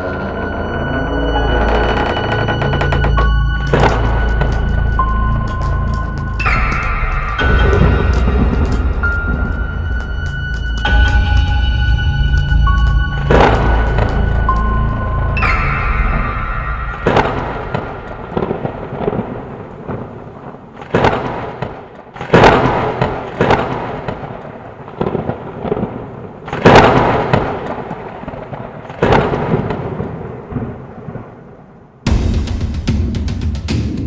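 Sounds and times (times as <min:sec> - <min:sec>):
thunder cracks rumbling: 0:02.8 - 0:32.7.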